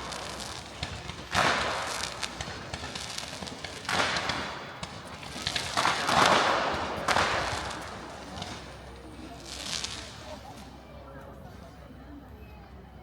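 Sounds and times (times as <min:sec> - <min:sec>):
fireworks bangs and crackles: 0:00.0 - 0:11.4.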